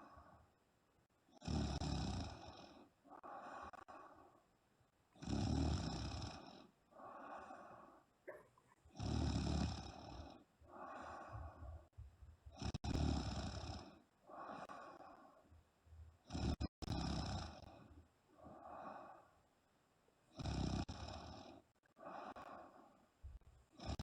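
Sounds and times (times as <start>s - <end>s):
soft breathing: 0.0s - 0.6s, 2.3s - 4.5s, 6.3s - 9.0s, 9.8s - 15.6s, 17.4s - 19.5s, 20.9s - 24.0s
woman snoring: 1.4s - 4.0s, 5.2s - 7.7s, 9.0s - 11.5s, 12.6s - 15.0s, 16.3s - 17.7s, 20.4s - 22.7s, 23.8s - 24.0s.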